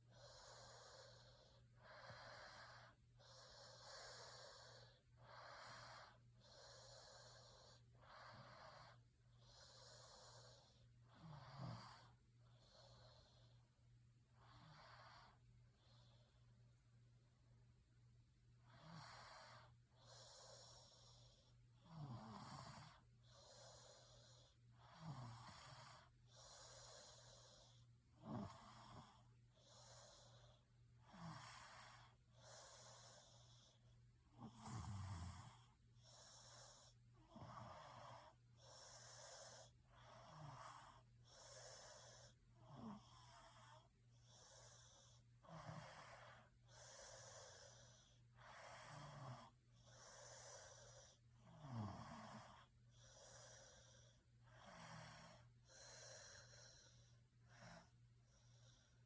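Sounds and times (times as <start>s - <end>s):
person snoring: 18.7s - 58.9s.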